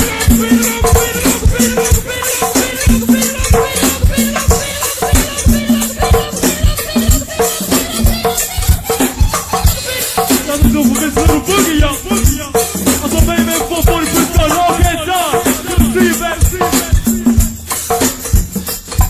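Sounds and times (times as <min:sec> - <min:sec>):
person chanting: 0:00.0 - 0:06.7, 0:09.8 - 0:17.6
band drum beat: 0:00.0 - 0:19.0
shaker percussion: 0:00.0 - 0:19.0.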